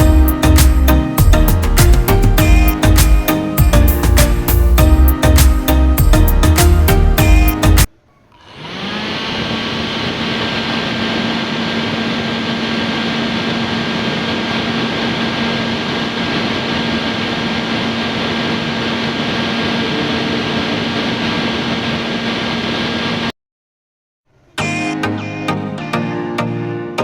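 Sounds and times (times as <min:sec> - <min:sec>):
air conditioner fan running: 0:08.1 - 0:23.3.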